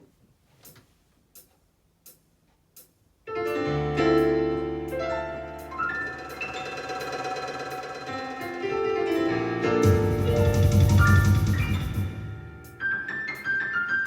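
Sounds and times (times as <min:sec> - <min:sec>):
electronic keyboard piano passage: 0:03.3 - 0:14.0
sustained bass: 0:09.8 - 0:12.8.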